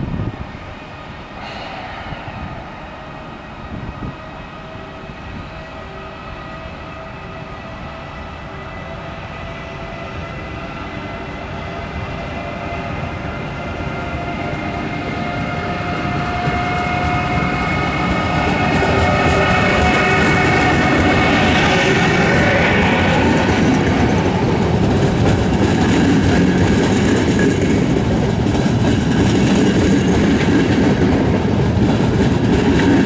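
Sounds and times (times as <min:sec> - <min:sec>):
train approaching: 0:00.0 - 0:33.0
whine of held tones: 0:00.4 - 0:09.3.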